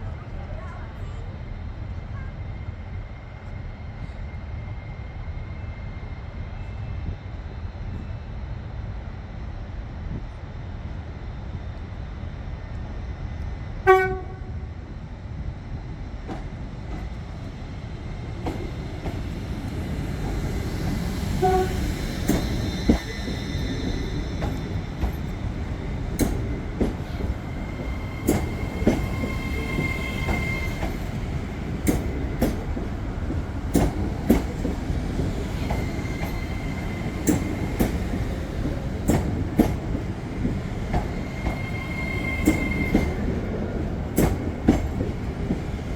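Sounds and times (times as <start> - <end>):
train rumbling past: 0.0 - 45.9
train horn blast: 13.8 - 14.8, 21.4 - 22.0.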